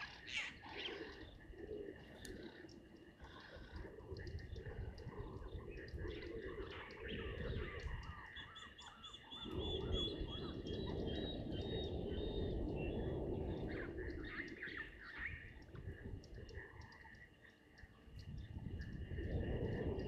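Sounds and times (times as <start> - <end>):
birds calling: 0.0 - 19.4.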